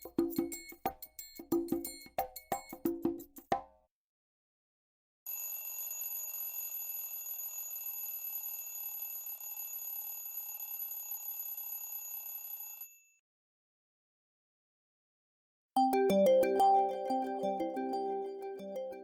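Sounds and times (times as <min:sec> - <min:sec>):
phone ringtone: 0:05.3 - 0:13.0.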